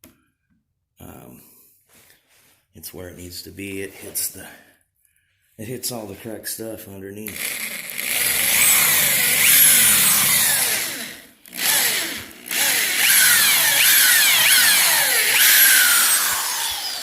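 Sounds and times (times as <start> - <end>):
power drill whining: 7.3 - 17.0.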